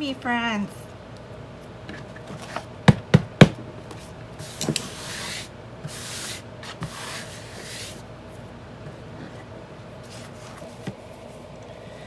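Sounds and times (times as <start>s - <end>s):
sharp knocks: 2.9s - 3.6s.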